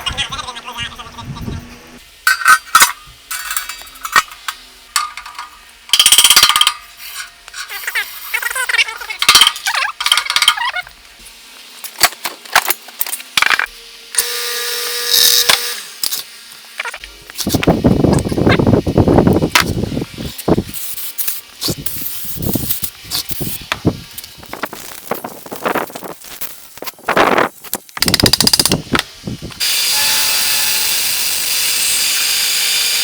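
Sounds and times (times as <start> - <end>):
metal tools clinking and scraping: 2.3 - 10.9
mechanical hiss with tone: 13.6 - 33.0.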